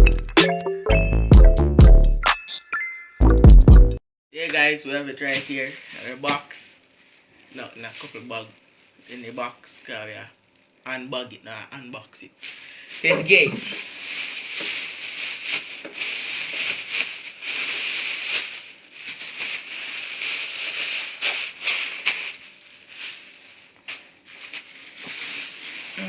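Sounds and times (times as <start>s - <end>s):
plastic packaging rustling: 5.1s - 10.9s, 12.4s - 26.0s.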